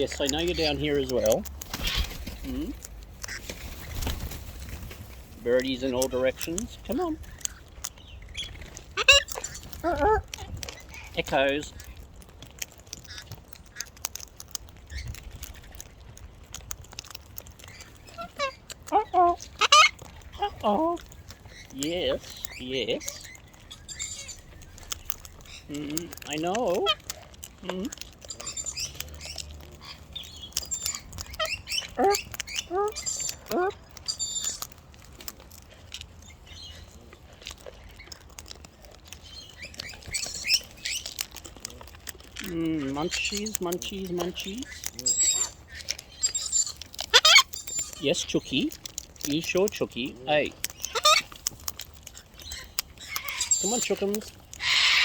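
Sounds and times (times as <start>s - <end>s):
parrots clicking and tapping: 0.0s - 55.0s
faint parrot calls: 54.6s - 55.0s.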